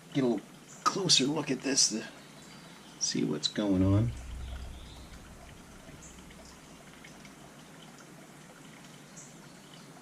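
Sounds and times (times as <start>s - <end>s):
low hum: 3.7s - 7.7s.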